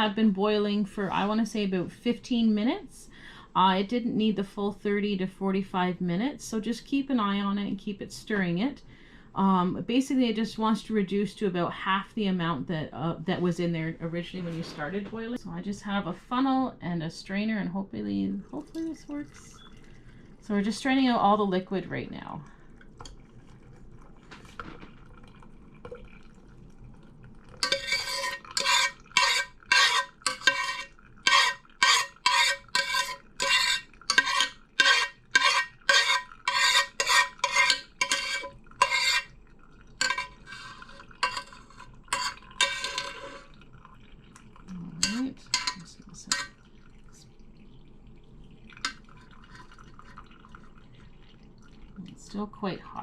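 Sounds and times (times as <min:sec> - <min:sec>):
spoon scraping in a strainer: 0:27.6 - 0:39.3, 0:40.0 - 0:43.6, 0:45.0 - 0:46.6.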